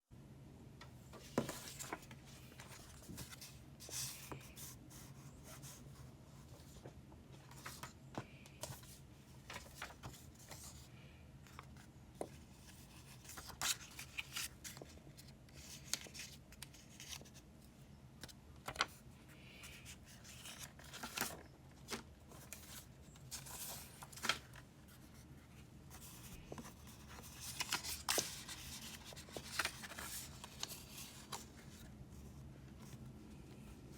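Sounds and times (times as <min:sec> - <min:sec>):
paper rustling: 0:01.2 - 0:05.8, 0:06.4 - 0:10.9, 0:11.5 - 0:17.5, 0:18.2 - 0:33.9.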